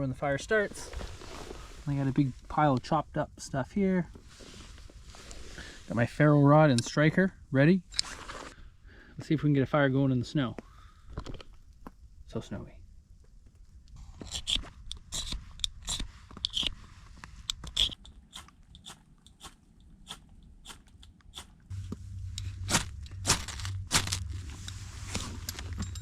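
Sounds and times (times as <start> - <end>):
ferrocerium rod scraped with striker: 14.2 - 26.0
low rumble: 21.6 - 26.0.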